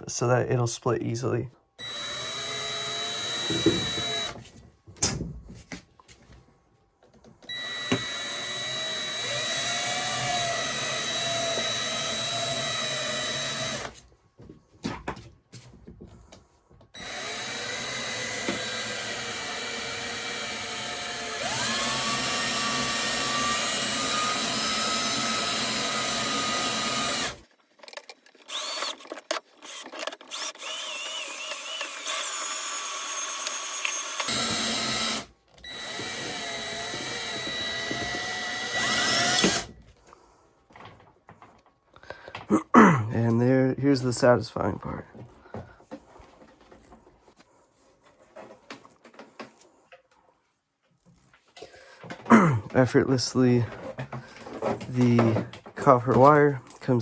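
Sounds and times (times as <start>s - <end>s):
electric drill spinning roller: 1.8s - 4.4s, 7.4s - 14.0s, 17.0s - 27.4s, 28.4s - 39.8s.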